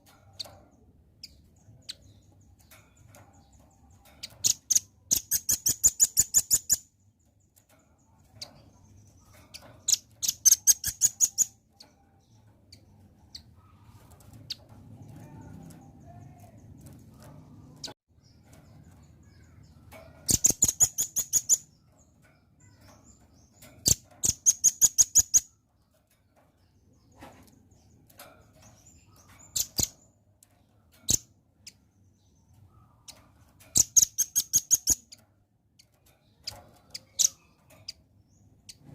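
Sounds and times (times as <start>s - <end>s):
bird calling with sharp chips: 4.2s - 7.0s, 9.5s - 14.6s, 19.2s - 21.8s, 32.6s - 35.2s, 35.8s - 38.8s.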